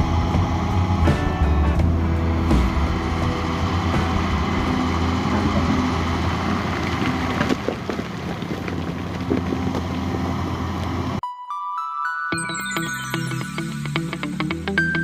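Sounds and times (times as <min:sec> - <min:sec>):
excavator diesel engine running: 0:00.0 - 0:11.2
chime: 0:11.2 - 0:14.2.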